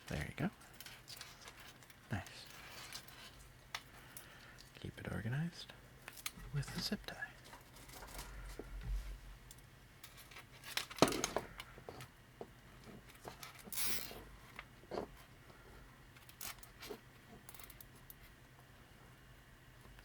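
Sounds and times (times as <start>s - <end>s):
plastic parts clicking and rustling: 9.5s - 12.1s.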